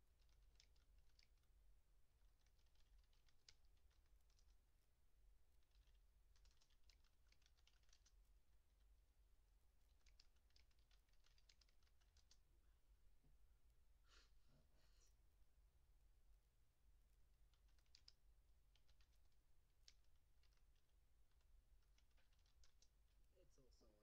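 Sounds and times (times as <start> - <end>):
low steady hum: 0.0 - 24.0
rapid clicks: 0.1 - 1.5, 2.2 - 4.7, 5.6 - 8.3, 9.9 - 12.5, 17.4 - 23.2.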